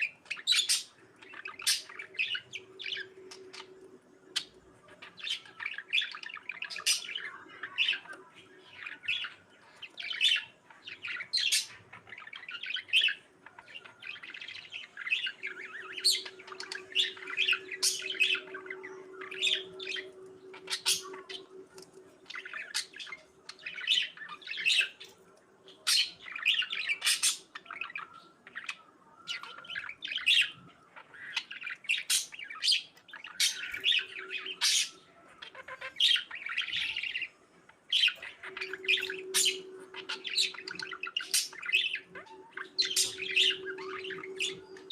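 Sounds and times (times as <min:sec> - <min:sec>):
budgerigars chirping: 0:00.0 - 0:44.9.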